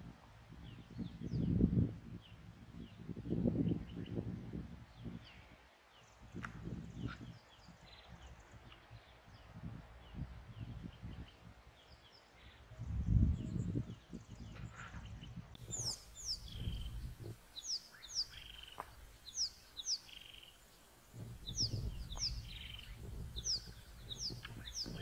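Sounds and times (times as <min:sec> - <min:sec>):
wild birds chirping: 0:15.6 - 0:25.0.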